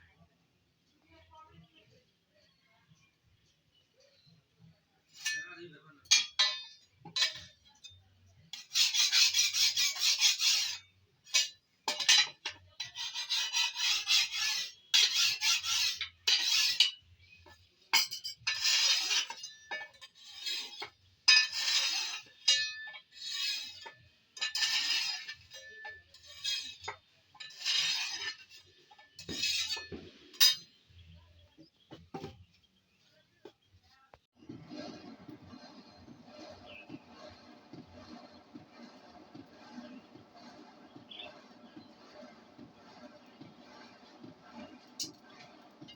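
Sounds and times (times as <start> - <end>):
file rasping on metal: 8.5 - 30.7, 34.5 - 45.9.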